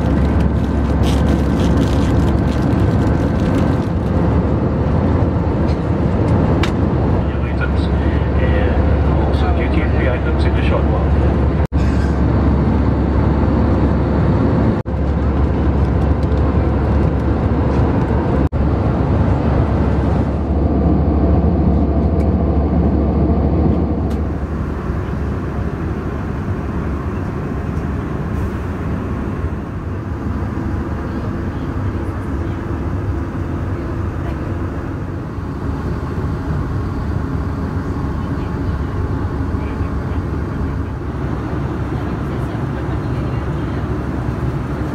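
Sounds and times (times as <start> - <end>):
jet cabin engine drone: 0.0 - 44.9.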